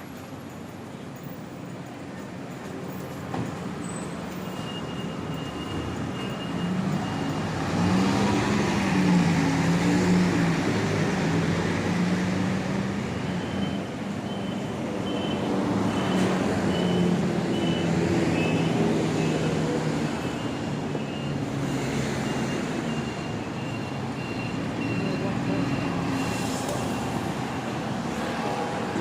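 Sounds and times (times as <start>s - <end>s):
city street traffic: 0.0s - 29.0s
high beeps: 22.2s - 27.8s.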